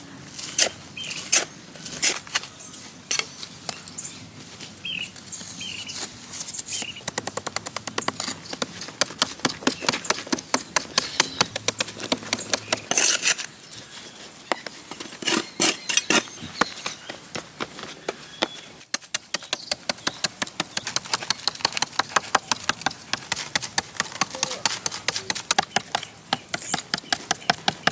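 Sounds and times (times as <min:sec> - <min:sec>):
bird chirping: 0:02.5 - 0:27.9
fast even tapping on wood: 0:07.0 - 0:12.9, 0:19.0 - 0:27.9
hand tool knocking on wood: 0:07.0 - 0:12.9, 0:19.2 - 0:27.9.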